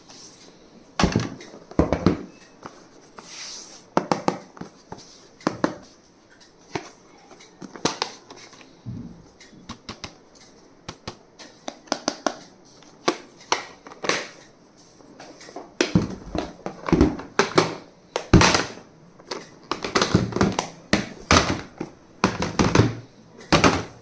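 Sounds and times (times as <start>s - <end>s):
stationery clicks and taps: 9.2s - 14.6s.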